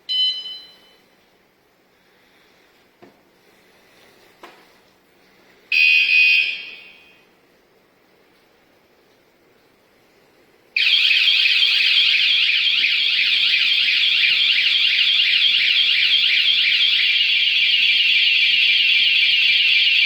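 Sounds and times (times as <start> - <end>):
bike alarm siren wailing: 10.8 - 20.0.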